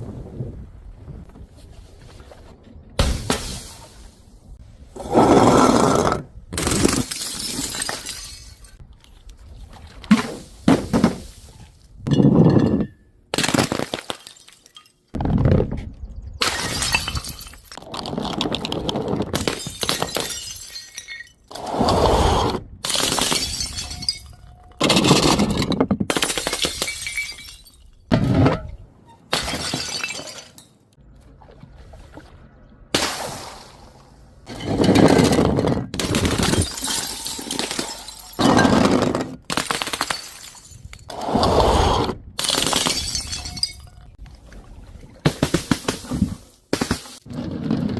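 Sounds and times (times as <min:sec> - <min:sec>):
glass bottles shattering: 0:06.6 - 0:08.8, 0:12.1 - 0:15.2, 0:16.4 - 0:17.8, 0:19.3 - 0:21.5, 0:22.8 - 0:28.1, 0:29.3 - 0:30.8, 0:34.5 - 0:41.2, 0:42.4 - 0:44.2.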